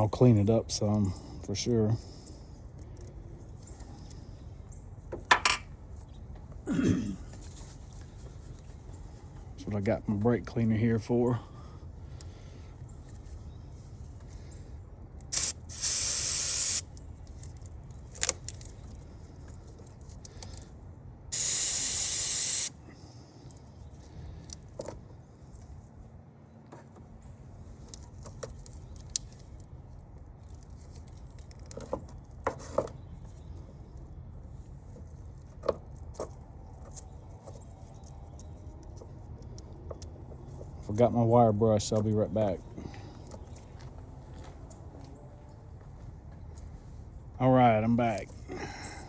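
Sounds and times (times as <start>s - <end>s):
aerosol spray bursts: 15.3s - 16.8s, 21.3s - 22.8s
small clicks and knocks: 30.4s - 33.0s.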